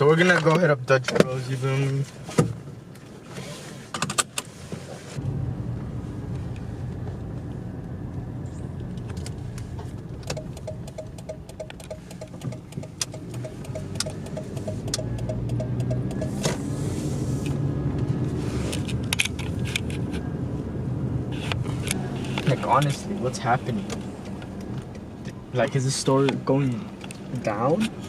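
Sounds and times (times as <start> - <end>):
car engine and cabin rumble: 0.0 - 28.0
sharp clicks: 10.2 - 16.4
quick ticking: 10.3 - 16.4.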